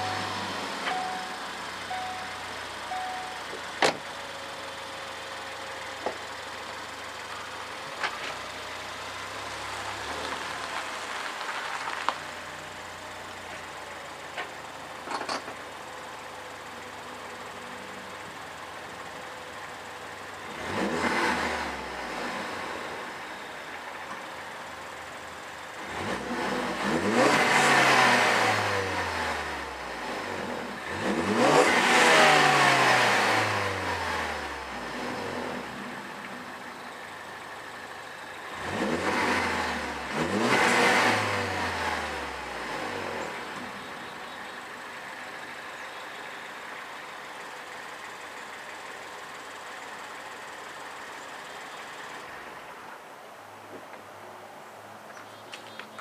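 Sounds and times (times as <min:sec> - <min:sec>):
car engine revving: 0:00.0 - 0:16.1, 0:19.4 - 0:23.3, 0:24.2 - 0:45.6
car engine idling: 0:00.0 - 0:56.0.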